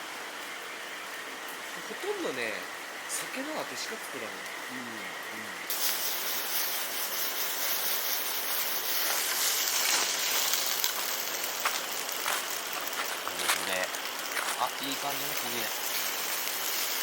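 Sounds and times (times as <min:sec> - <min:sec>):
food sizzling in hot oil: 0:01.8 - 0:17.0
oil popping and crackling: 0:05.7 - 0:17.0.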